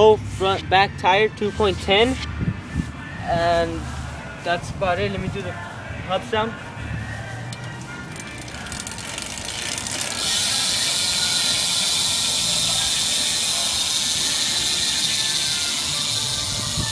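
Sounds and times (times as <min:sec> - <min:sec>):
bike hub freewheeling buzz: 0:07.5 - 0:16.9.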